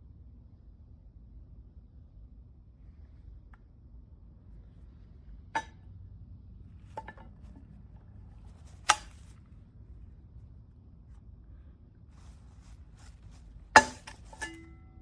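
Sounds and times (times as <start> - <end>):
pots and pans clinking: 13.8 - 14.8.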